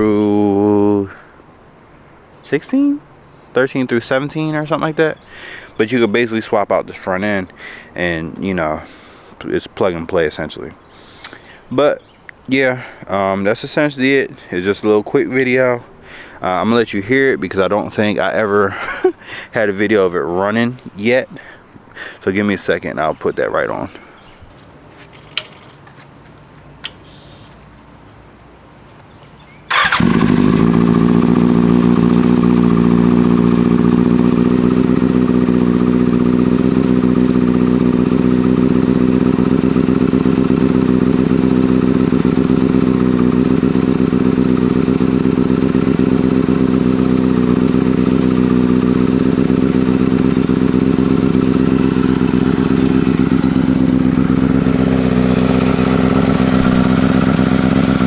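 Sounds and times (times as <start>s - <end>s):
motorcycle engine starting and idling: 29.7s - 58.0s.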